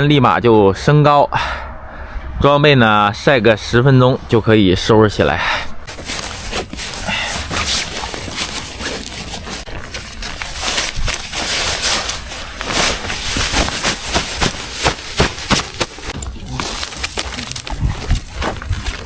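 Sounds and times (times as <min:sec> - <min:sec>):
rustling and clicks of handling: 0:05.9 - 0:19.0
wind rumble on microphone: 0:16.1 - 0:19.0.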